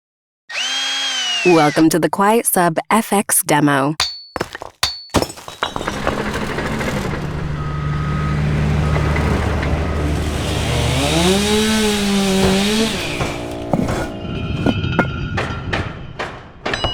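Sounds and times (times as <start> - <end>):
machinery engine clattering: 4.8 - 16.9.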